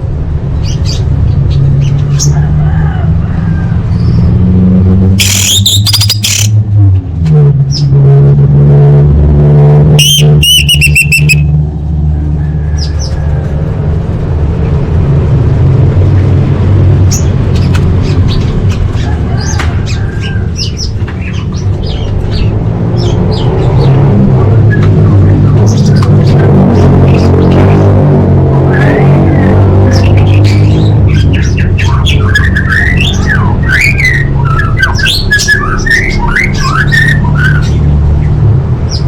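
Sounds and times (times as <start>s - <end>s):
bird chirps and whistles: 5.2s - 6.5s, 10.0s - 11.5s, 31.8s - 37.8s
harsh bird calls: 5.2s - 6.6s, 10.0s - 11.5s, 28.7s - 39.0s.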